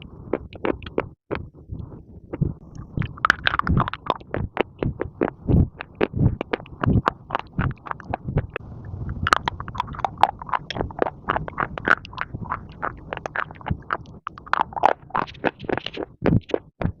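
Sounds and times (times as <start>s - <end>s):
crunchy clay being chewed: 0.3s - 1.5s, 2.3s - 8.4s, 9.4s - 17.0s.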